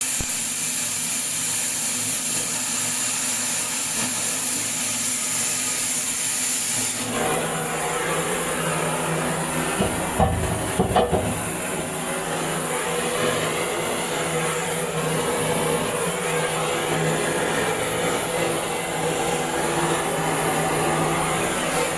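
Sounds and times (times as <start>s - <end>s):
loud steady hiss: 0.0s - 21.9s
sharp knocks: 9.8s - 11.6s.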